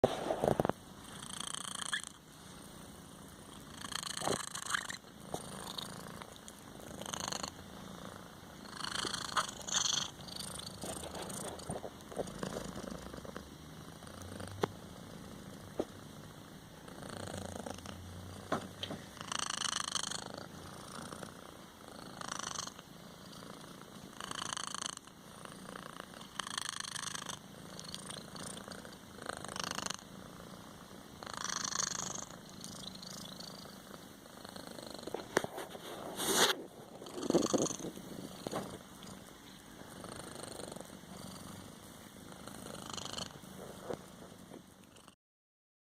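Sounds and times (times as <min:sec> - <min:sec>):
kitten snoring and purring: 0:00.0 - 0:45.2.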